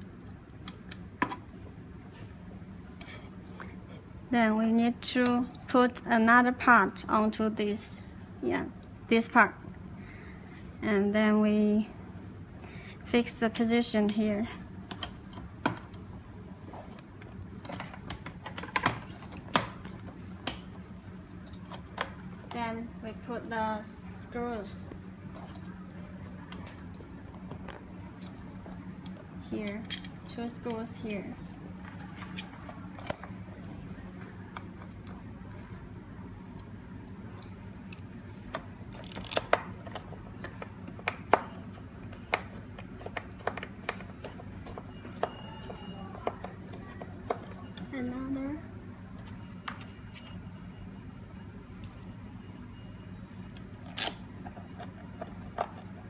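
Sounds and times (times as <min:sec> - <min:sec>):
lock parts clicking and tapping: 0:36.6 - 0:47.9.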